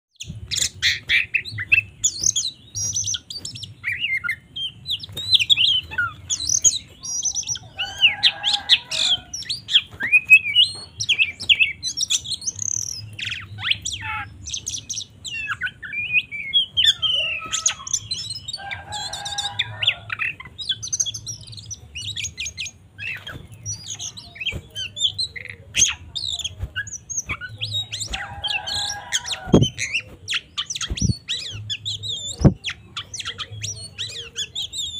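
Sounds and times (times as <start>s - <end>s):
bird singing whistles and trills: 0.2s - 34.9s
bird harsh rasping call: 16.7s - 20.4s.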